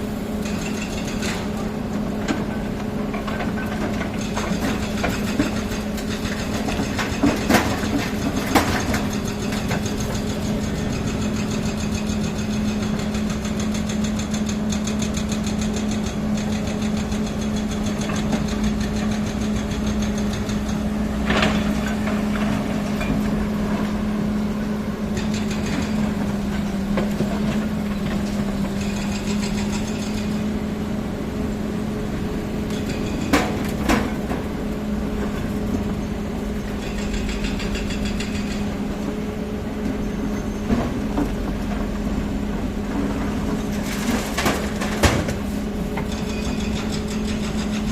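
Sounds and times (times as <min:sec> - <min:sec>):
engine running steadily: 0:00.0 - 0:47.9.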